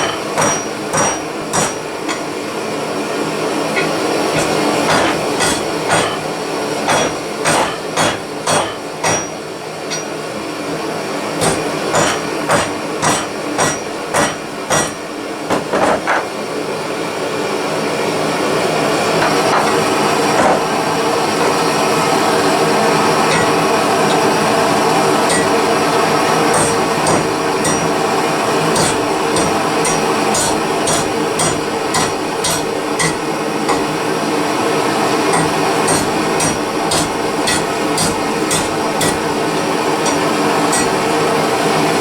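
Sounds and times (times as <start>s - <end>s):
hammer striking hot metal: 0.0s - 2.3s, 3.7s - 6.3s, 6.9s - 10.3s, 11.4s - 16.2s, 23.0s - 34.1s, 35.2s - 41.3s.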